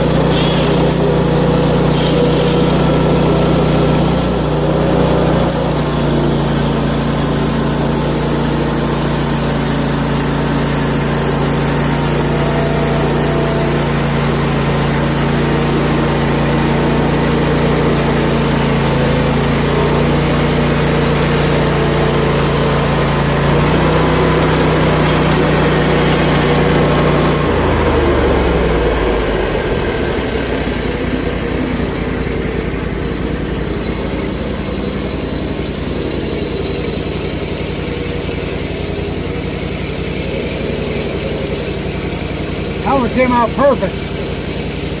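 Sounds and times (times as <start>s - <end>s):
saw blade cutting log: 0.0s - 18.4s
sawmill engine running under load: 0.0s - 45.0s.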